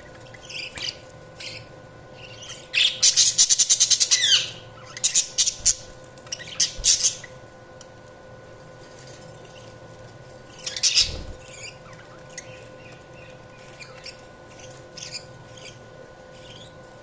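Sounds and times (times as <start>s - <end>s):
faint steady hum: 0.0s - 17.0s
budgerigars chirping: 0.3s - 7.3s, 10.6s - 15.8s.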